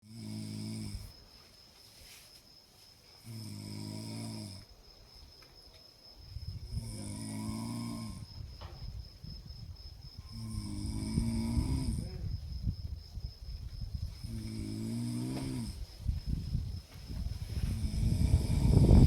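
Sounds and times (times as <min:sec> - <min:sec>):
person snoring deeply: 0:00.0 - 0:01.1, 0:03.2 - 0:04.7, 0:06.6 - 0:08.3, 0:10.3 - 0:12.2, 0:14.2 - 0:15.8, 0:17.7 - 0:19.0.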